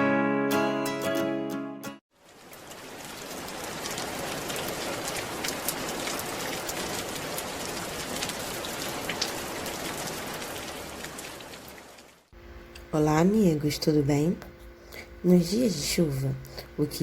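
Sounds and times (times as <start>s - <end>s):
rain pattering: 2.1s - 13.5s.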